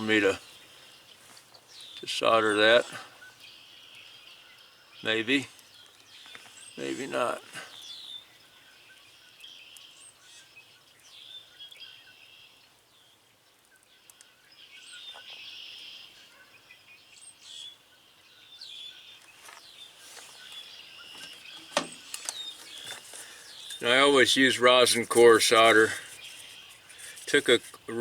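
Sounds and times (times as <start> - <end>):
birds chirping: 0.0 - 28.0
sharp clicks and knocks: 21.6 - 22.4.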